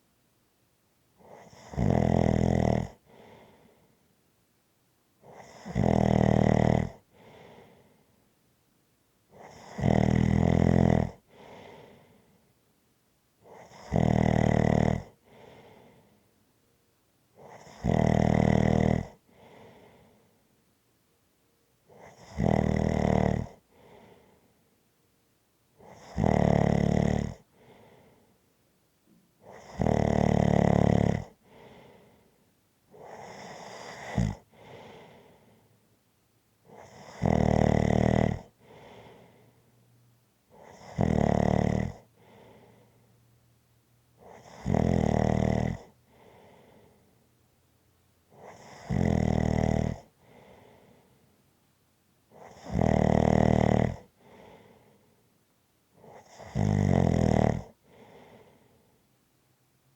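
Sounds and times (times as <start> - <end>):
person snoring loudly: 1.4 - 3.0, 5.4 - 7.0, 9.4 - 11.2, 13.6 - 15.2, 17.5 - 19.2, 22.0 - 23.6, 25.9 - 27.4, 29.5 - 31.4, 33.0 - 35.0, 36.7 - 39.0, 40.6 - 42.4, 44.2 - 45.9, 48.4 - 50.1, 52.4 - 54.5, 56.0 - 58.1
soft breath: 3.0 - 4.2, 7.0 - 8.3, 11.2 - 12.7, 15.1 - 16.8, 19.1 - 20.7, 23.6 - 24.9, 27.4 - 28.6, 31.3 - 36.0, 38.5 - 40.9, 41.9 - 43.4, 45.8 - 47.4, 50.0 - 51.4, 54.0 - 56.3, 57.6 - 59.9.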